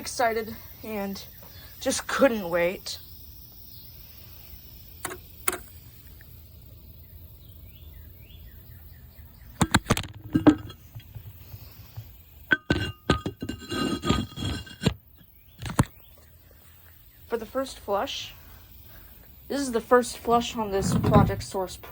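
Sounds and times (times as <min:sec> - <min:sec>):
hard objects clinking and knocking: 0:09.6 - 0:11.3, 0:12.5 - 0:15.0.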